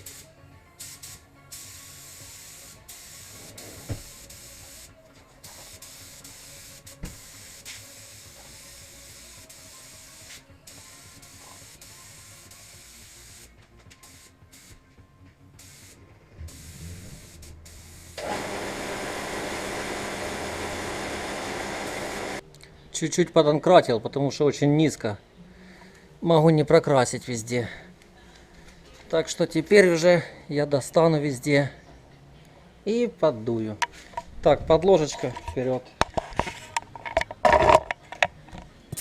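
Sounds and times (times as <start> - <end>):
compressed-air gun hissing: 0.0 - 14.8, 15.6 - 22.4
garage noise: 15.6 - 22.4, 33.8 - 39.0.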